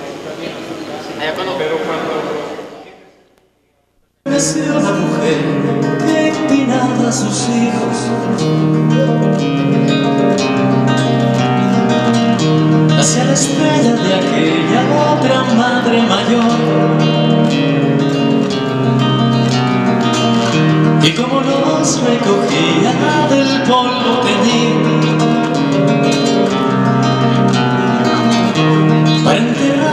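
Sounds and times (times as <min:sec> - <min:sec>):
men singing slow song: 0:04.3 - 0:09.2, 0:12.9 - 0:17.7, 0:21.0 - 0:25.9, 0:29.2 - 0:29.9
acoustic guitar: 0:04.3 - 0:29.9.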